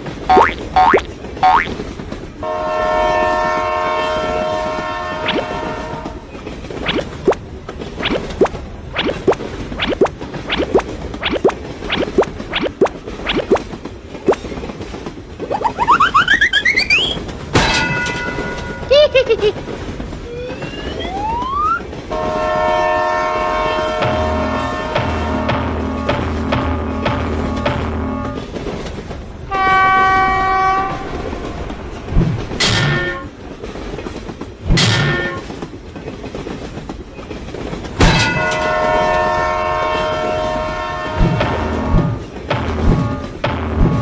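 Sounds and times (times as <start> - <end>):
running train: 0.0 - 44.0
falling boing-like chirps: 0.3 - 1.7, 8.0 - 13.6, 15.5 - 17.2
long train-horn chord: 2.4 - 6.2, 22.1 - 28.4, 38.4 - 42.0
rising slide-whistle glide: 15.4 - 17.2, 20.3 - 21.8.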